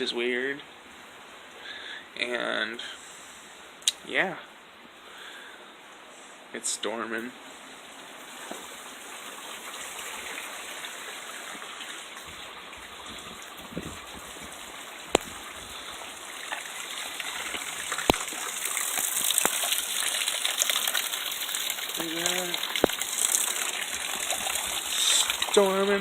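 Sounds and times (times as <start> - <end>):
water running: 6.8 - 26.0
heavy rain falling: 6.9 - 26.0.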